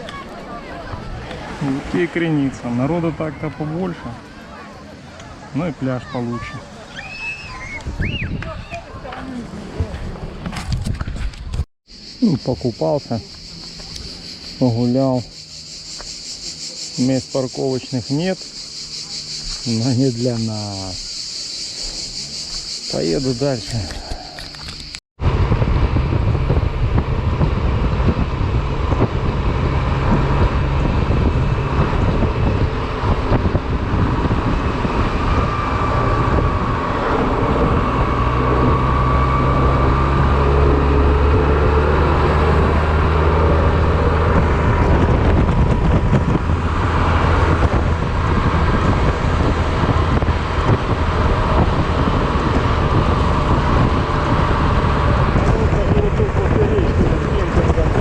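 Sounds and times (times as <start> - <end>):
road noise: 0.0 - 58.0
wind noise on microphone: 7.4 - 11.7, 18.6 - 58.0.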